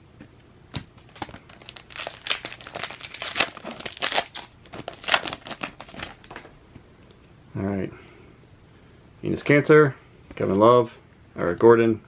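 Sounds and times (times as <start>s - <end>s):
plastic wrapper crinkling: 1.0s - 6.6s.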